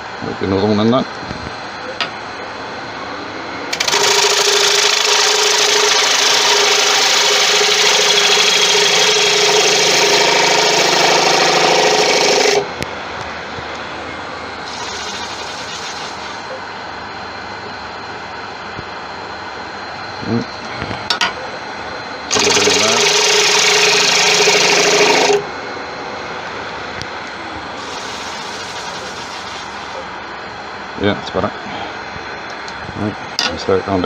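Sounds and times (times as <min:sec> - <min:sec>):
gouge shearing cut on wood: 0:03.7 - 0:12.7, 0:22.3 - 0:25.5, 0:27.8 - 0:30.0
wood lathe running: 0:03.7 - 0:12.8, 0:14.6 - 0:16.5, 0:22.3 - 0:25.6, 0:27.7 - 0:30.1.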